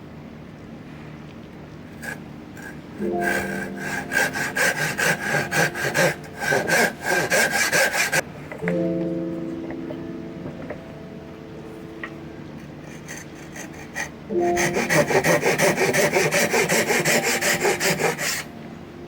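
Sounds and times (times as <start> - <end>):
hand saw cutting wood: 2.0 - 8.2, 12.8 - 18.5.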